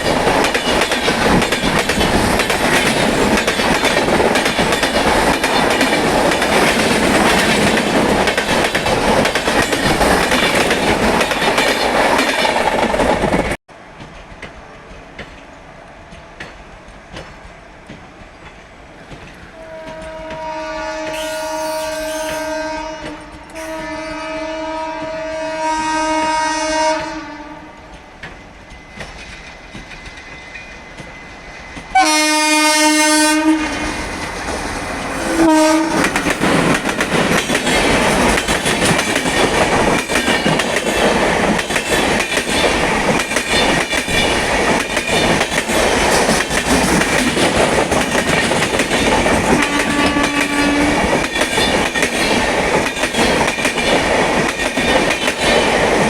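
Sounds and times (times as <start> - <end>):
train wheels clattering over rails: 0.0 - 20.6, 28.0 - 32.0, 33.8 - 56.0
train horn blasts: 19.5 - 28.0, 31.9 - 34.0, 35.1 - 36.2, 49.5 - 51.0.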